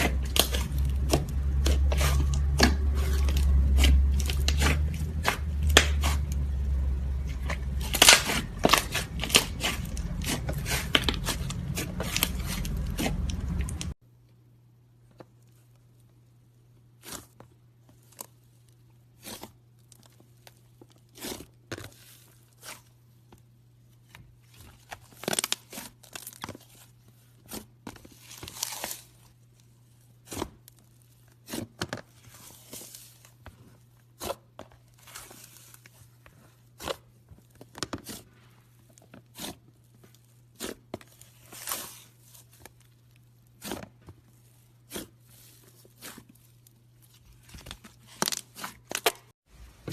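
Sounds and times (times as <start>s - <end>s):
low steady hum: 0.0s - 19.2s.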